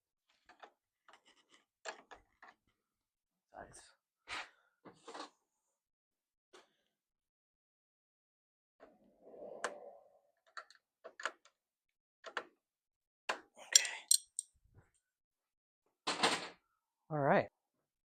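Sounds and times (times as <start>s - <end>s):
metal tools clinking: 13.8s - 14.5s.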